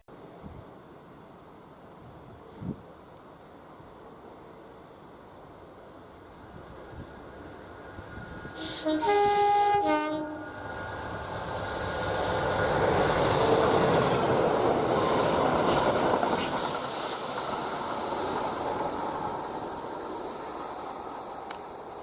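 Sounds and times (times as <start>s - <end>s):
train passing rumble: 0.1s - 22.0s
high wheel squeal: 16.1s - 19.0s.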